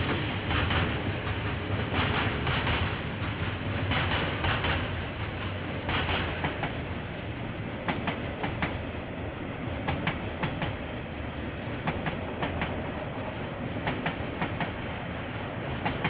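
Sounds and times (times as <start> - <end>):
train wheels clicking over rail joint: 0.0 - 6.9, 7.8 - 8.8, 9.8 - 10.8, 11.8 - 13.0, 13.7 - 14.8, 15.6 - 16.0
train rumble: 0.0 - 16.0.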